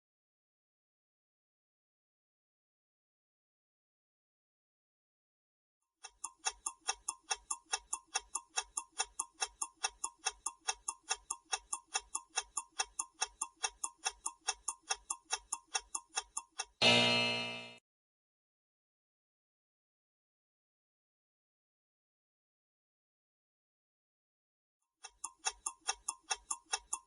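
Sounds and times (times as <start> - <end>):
clock ticking: 6.0 - 17.8, 25.0 - 27.0
time's-up tone: 16.8 - 17.8.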